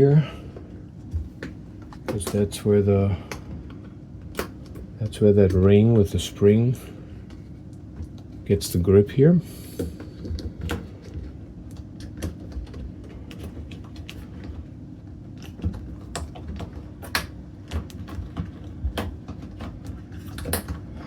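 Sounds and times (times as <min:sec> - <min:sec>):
low steady hum: 0:00.0 - 0:21.0
hands clicking and tapping rubber seal: 0:00.6 - 0:02.6, 0:03.2 - 0:06.0, 0:15.4 - 0:21.0.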